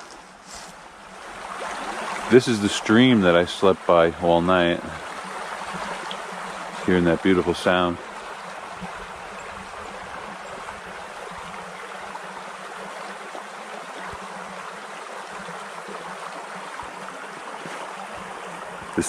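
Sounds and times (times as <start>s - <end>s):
stream gurgling over rocks: 0.0s - 19.0s.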